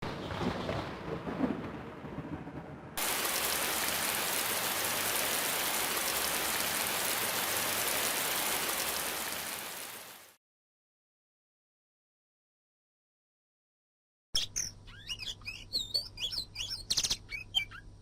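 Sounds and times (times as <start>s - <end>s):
heavy rain hissing: 3.0s - 10.4s.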